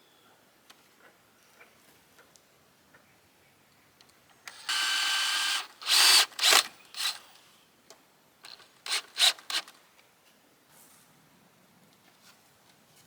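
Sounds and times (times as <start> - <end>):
power drill motor whine: 4.5 - 7.3, 8.5 - 9.7
short noisy bursts: 4.5 - 7.3.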